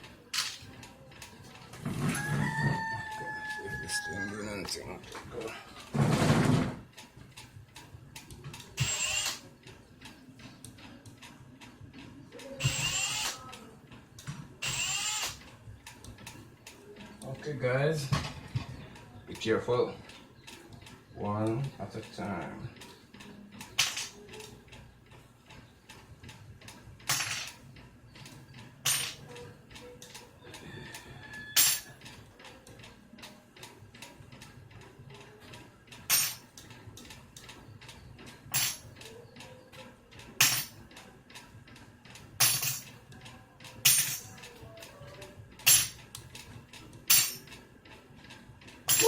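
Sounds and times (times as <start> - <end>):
metal hardware clinking: 0.3 - 0.7, 8.5 - 9.4, 23.6 - 24.5, 27.0 - 27.6, 28.8 - 29.4, 31.6 - 32.0, 36.0 - 36.6, 38.5 - 39.2, 40.4 - 40.8, 42.4 - 43.0, 43.8 - 44.6, 45.6 - 46.2, 47.1 - 47.6.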